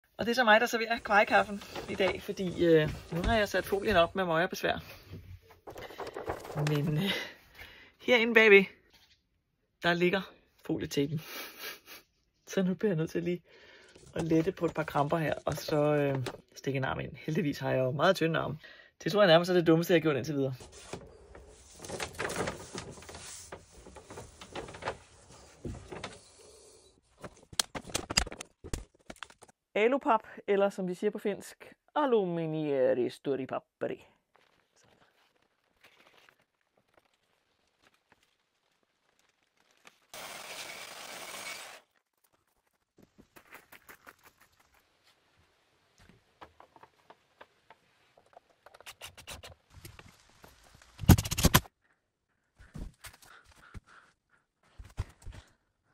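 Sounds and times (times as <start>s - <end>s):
rustling and scraping: 0.9s - 4.2s, 4.9s - 7.0s, 20.5s - 26.4s
hands handling building material: 4.9s - 7.1s.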